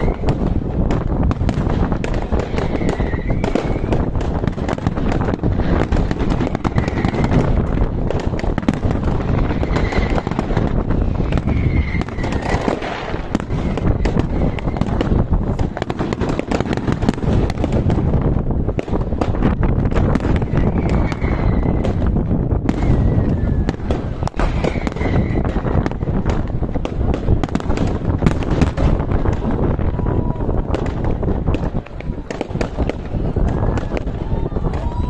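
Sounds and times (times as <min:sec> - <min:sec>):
fireworks crackling and popping: 0:00.0 - 0:35.0.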